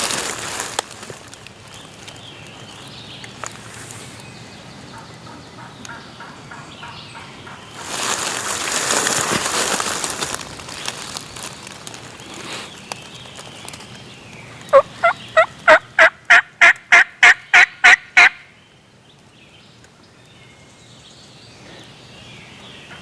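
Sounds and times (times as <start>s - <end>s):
loud rustling: 7.8s - 12.7s
distant turkey gobbling: 14.7s - 18.5s.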